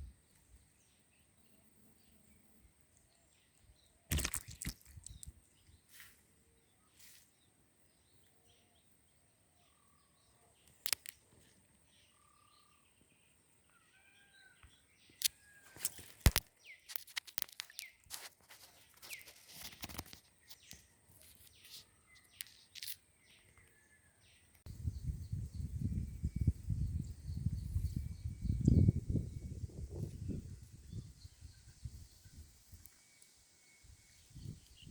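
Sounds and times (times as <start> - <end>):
birds chirping faintly: 0.0 - 34.9
sharp clicks: 10.6 - 11.2, 15.2 - 17.9.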